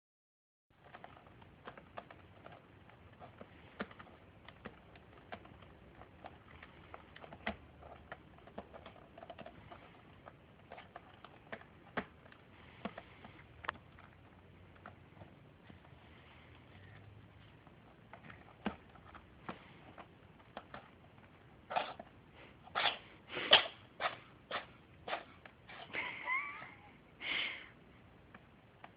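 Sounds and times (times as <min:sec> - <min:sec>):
claws clicking on scratching post: 0:00.8 - 0:22.1.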